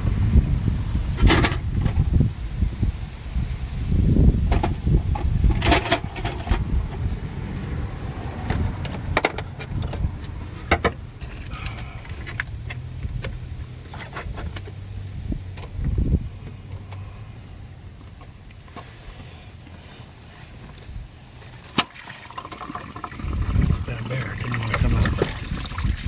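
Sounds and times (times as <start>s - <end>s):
low rumble: 0.0s - 18.4s.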